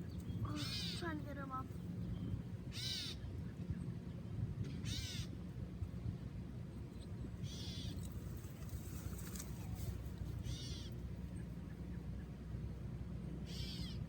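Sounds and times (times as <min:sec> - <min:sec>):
bird harsh calls: 0:00.0 - 0:01.1, 0:02.7 - 0:03.2, 0:04.8 - 0:05.3, 0:07.4 - 0:08.0, 0:10.4 - 0:11.0, 0:13.4 - 0:14.0.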